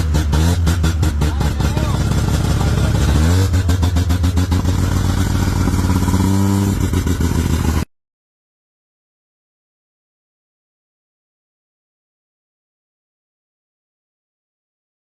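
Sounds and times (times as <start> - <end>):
car engine revving loud: 0.0 - 7.9.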